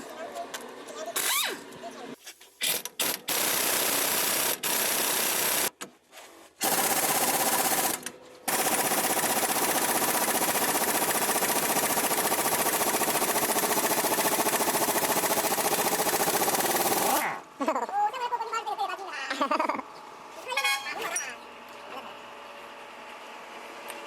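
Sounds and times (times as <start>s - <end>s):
pneumatic wrench rattling: 2.6s - 5.7s.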